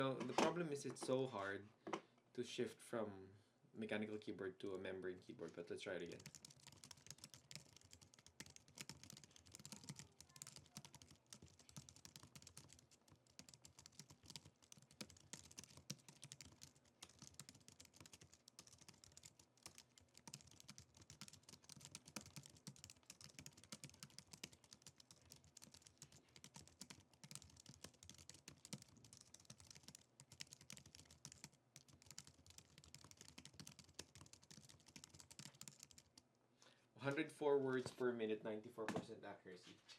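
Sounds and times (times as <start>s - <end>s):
rapid keyboard typing: 6.0s - 36.2s.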